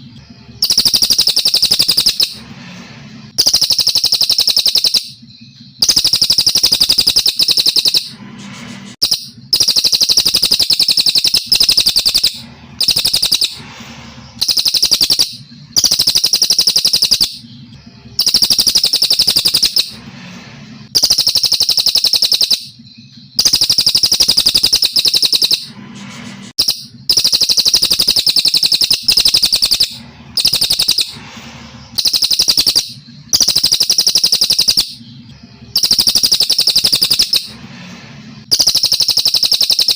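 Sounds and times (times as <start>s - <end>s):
bird singing rapid high trills: 0.0s - 8.3s, 9.0s - 25.8s, 26.6s - 39.9s.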